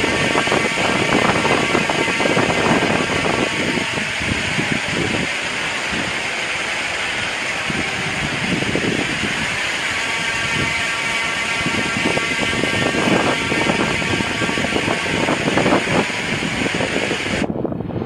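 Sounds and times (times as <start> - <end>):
wind rushing with gusts: 0.0 - 18.0.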